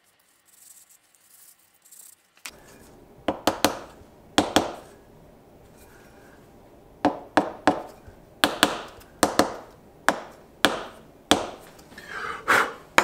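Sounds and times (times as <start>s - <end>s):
tool knocking on mould: 3.3s - 4.9s, 7.0s - 11.7s.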